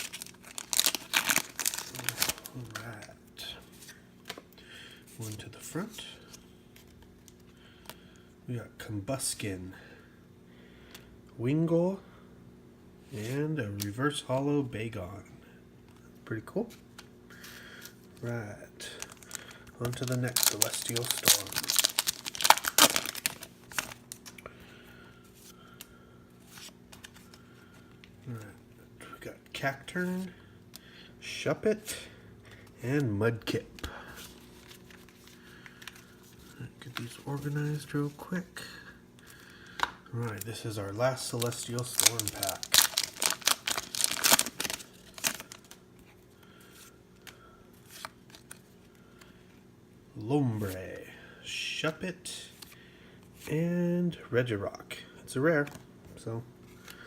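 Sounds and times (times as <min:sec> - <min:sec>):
trading cards shuffling: 0:19.0 - 0:24.4, 0:33.8 - 0:38.3, 0:39.2 - 0:49.3.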